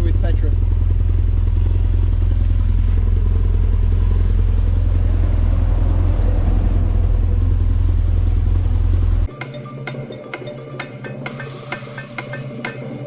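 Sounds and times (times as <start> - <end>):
motorcycle engine running: 0.0 - 9.3.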